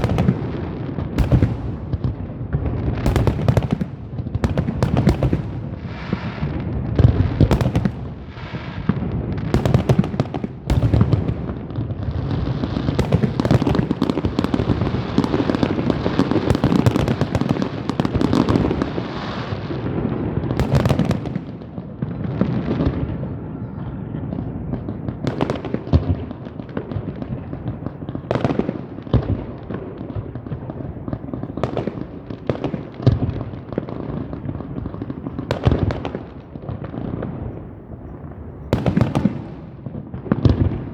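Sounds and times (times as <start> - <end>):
fireworks bangs and crackling: 0.0 - 40.9.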